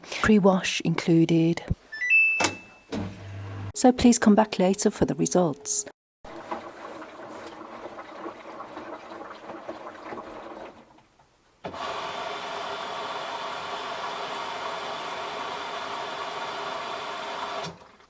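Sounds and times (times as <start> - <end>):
washing machine mechanical hum: 2.9 - 3.7, 6.3 - 18.0
washing machine uneven whirring: 6.3 - 18.0.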